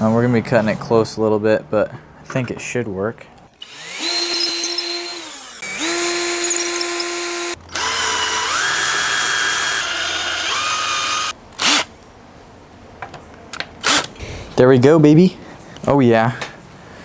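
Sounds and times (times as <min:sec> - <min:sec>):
power drill motor whining: 0:03.6 - 0:11.9.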